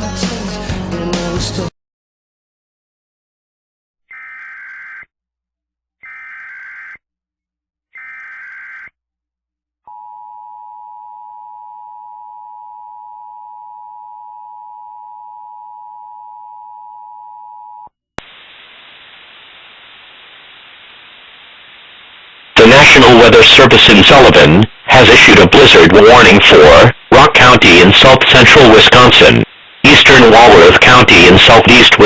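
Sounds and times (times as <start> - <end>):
bursts of data tones: 4.1 - 5.1, 6.0 - 7.0, 8.0 - 8.9
static hiss: 18.2 - 32.0.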